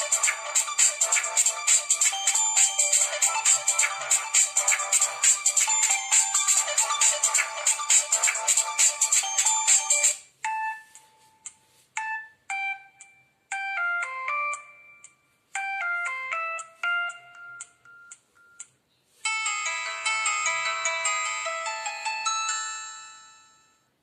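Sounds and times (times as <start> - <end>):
phone alert tones: 0.0 - 11.4, 12.0 - 15.0, 15.6 - 18.6.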